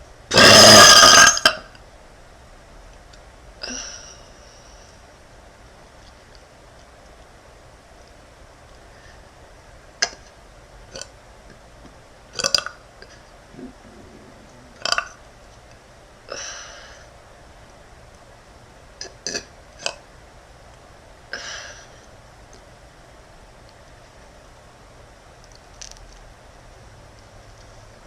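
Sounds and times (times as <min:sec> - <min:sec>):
woman burping: 0:00.3 - 0:01.6
breathy exhales: 0:13.5 - 0:15.0.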